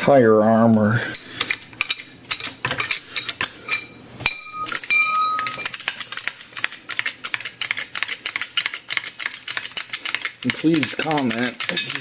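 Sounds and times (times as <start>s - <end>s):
short metal ring: 3.8s - 5.7s.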